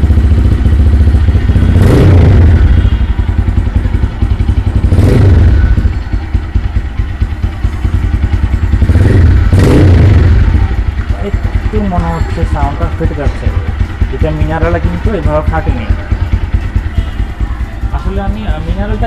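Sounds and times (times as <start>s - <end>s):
motorcycle engine idling and revving: 0.0s - 19.0s.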